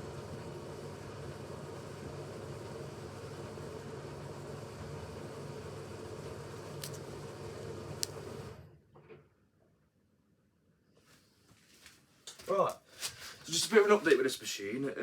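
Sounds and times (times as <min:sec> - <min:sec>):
washing machine spinning: 0:00.0 - 0:08.8.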